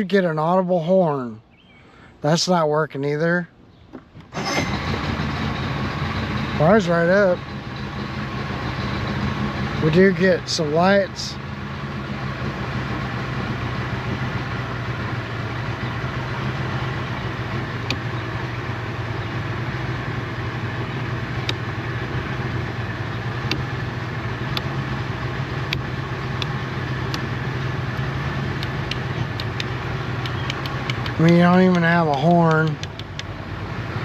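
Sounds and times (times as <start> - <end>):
outboard motor idling: 4.3 - 34.0
sharp clicks: 21.4 - 21.6, 25.7 - 27.3, 28.0 - 33.4.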